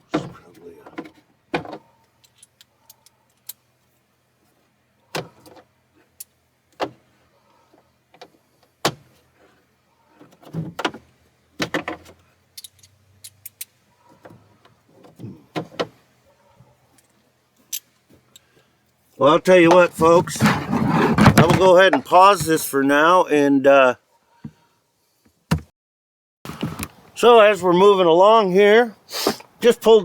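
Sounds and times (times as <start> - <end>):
plastic parts scraping: 19.5 - 22.5.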